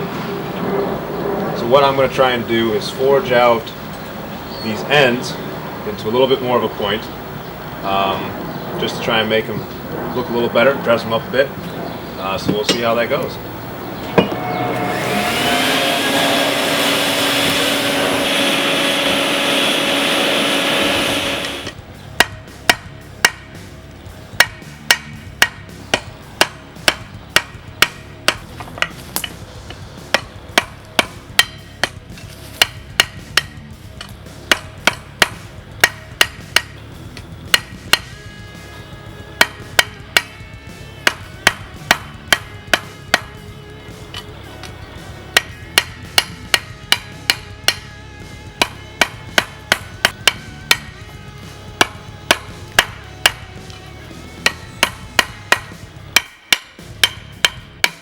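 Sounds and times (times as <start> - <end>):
loud steady rushing noise: 0.0 - 58.0
held tones: 11.4 - 22.4
hammer striking steel on anvil: 12.5 - 13.2, 14.1 - 23.6, 24.4 - 38.8, 39.4 - 58.0.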